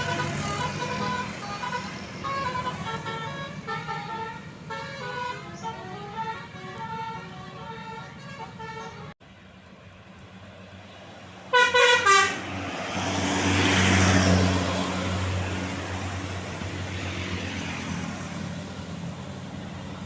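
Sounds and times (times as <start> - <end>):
musical bus horn: 0.0 - 9.2, 11.5 - 12.6
bus driving past: 0.0 - 20.0.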